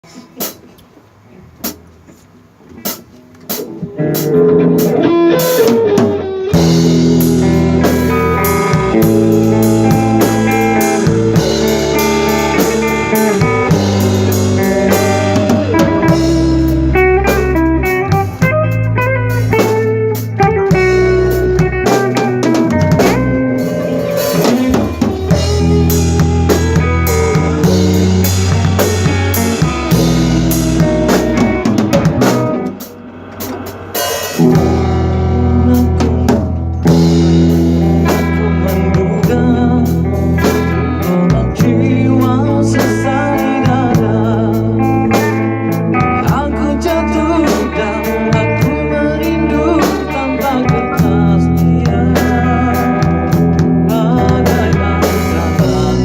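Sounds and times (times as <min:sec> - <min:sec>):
rock band playing: 0:00.0 - 0:02.1, 0:02.8 - 0:56.0.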